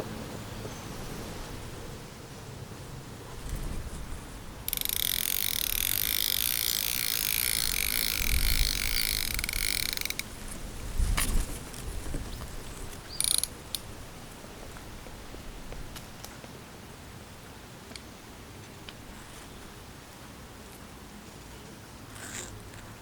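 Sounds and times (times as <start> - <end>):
fishing reel ratcheting: 4.7 - 10.3, 13.1 - 13.8, 22.1 - 22.6.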